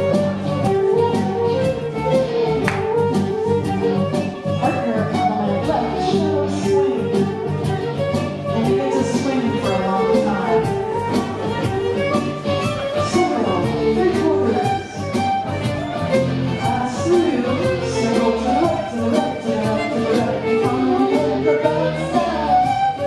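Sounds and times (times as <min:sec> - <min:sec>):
fiddle-led dance band: 0:00.0 - 0:23.0.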